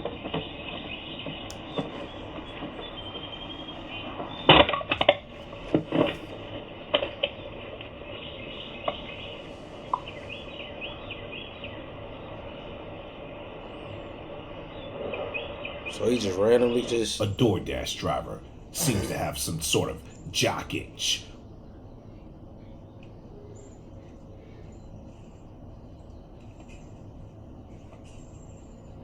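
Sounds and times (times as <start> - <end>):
background hiss: 0.1 - 22.5.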